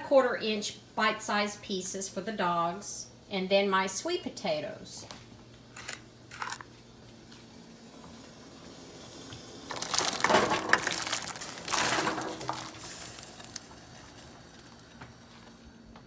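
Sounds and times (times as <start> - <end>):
potatoes poured into boiling water: 9.6 - 15.5.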